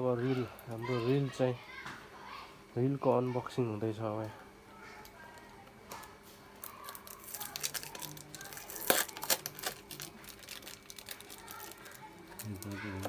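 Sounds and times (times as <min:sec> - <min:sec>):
packaging tearing and crinkling: 0:06.6 - 0:13.0.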